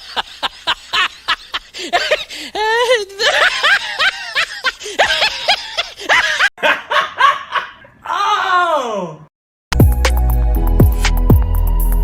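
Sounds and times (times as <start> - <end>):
person laughing high-pitched: 0.0 - 7.9.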